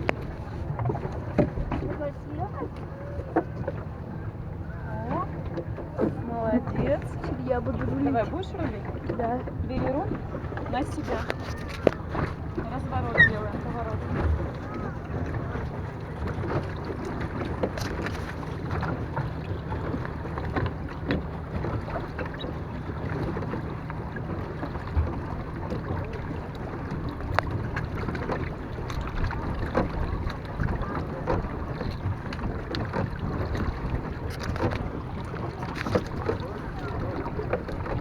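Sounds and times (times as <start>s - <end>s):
water lapping against hull: 0.0s - 38.0s
wind on microphone: 0.0s - 38.0s
small knocks and clicks: 11.0s - 12.4s.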